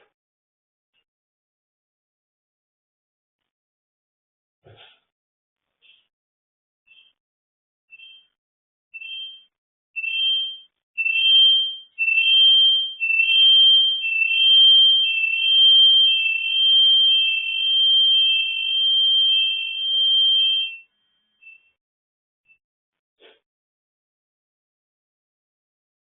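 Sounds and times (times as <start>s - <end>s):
electronic alarm two-tone beeps: 7.9s - 8.4s, 9.0s - 21.8s.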